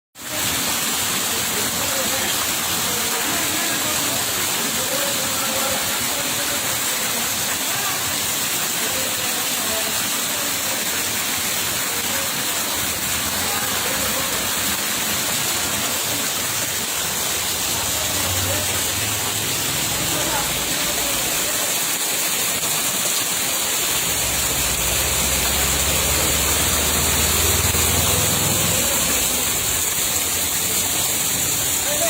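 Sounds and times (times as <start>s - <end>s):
faint voices: 0.2s - 32.0s
water rushing: 0.2s - 32.0s.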